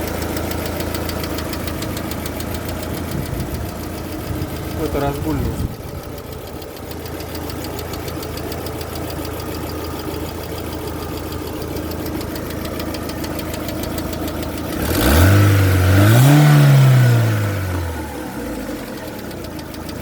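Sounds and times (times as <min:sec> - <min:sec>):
car engine idling: 0:00.0 - 0:20.0
engine lifters tapping: 0:00.0 - 0:20.0
engine revving: 0:12.0 - 0:20.0.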